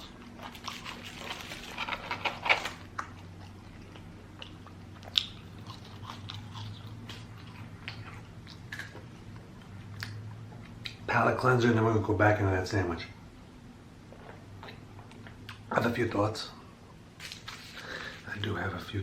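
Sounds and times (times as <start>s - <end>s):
chewing: 0.0s - 11.0s
crunching fried food: 0.0s - 11.0s.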